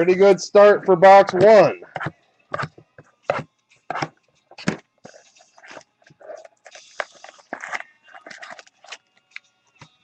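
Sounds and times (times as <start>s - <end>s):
card packaging rustling: 6.6s - 9.2s.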